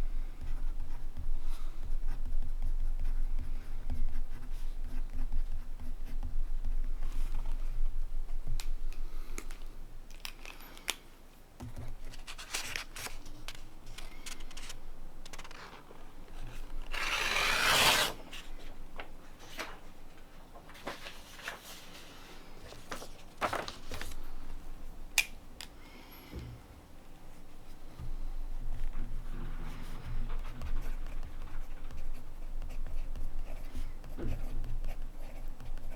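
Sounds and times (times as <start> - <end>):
pen nib scratching paper: 29.8 - 35.9.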